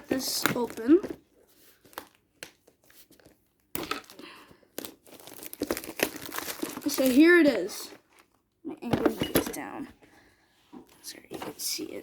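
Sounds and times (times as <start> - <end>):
plastic wrap crinkling and tearing: 0.0 - 8.4.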